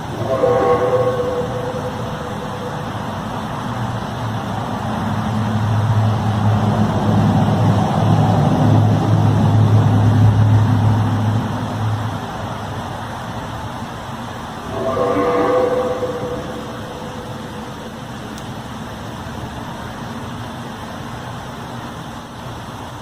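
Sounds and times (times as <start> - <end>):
low droning hum: 0.0 - 7.3, 14.5 - 19.2
noisy background: 0.0 - 23.0.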